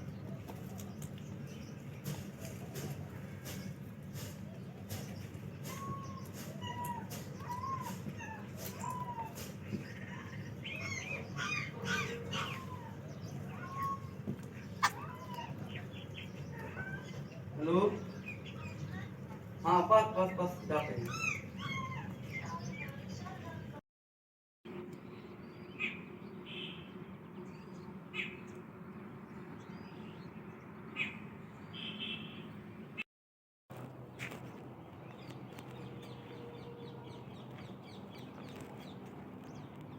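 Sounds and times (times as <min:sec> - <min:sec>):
birds calling: 0:00.0 - 0:23.7, 0:24.8 - 0:33.0, 0:34.0 - 0:39.9
low background hum: 0:00.0 - 0:23.8.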